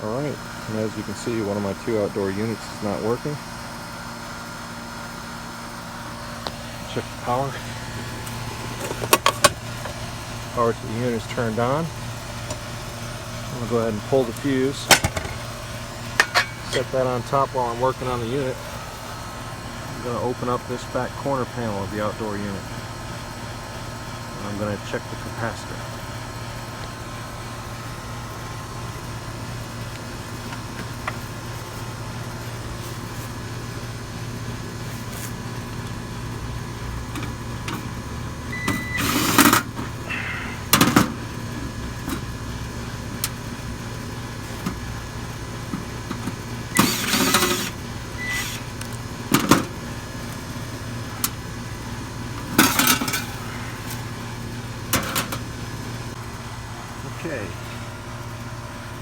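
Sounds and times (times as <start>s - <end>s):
air conditioner humming: 0.0s - 59.0s
metal panel clattering and scraping: 16.1s - 16.9s, 52.4s - 53.4s.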